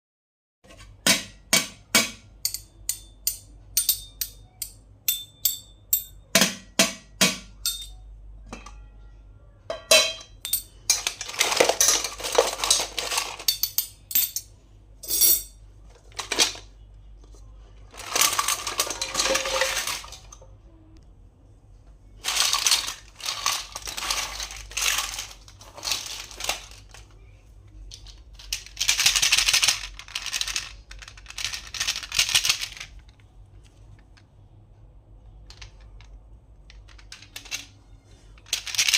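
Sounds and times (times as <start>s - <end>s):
packaging rustling and scraping: 11.0s - 13.5s, 22.2s - 27.1s
plastic toys clicking and tapping: 27.9s - 33.3s, 35.4s - 37.8s, 38.4s - 38.9s.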